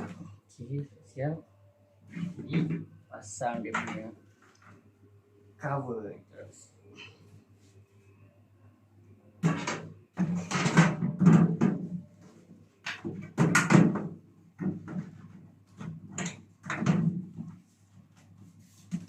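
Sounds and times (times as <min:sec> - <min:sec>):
metallic knocks and clatters: 0:09.4 - 0:12.0.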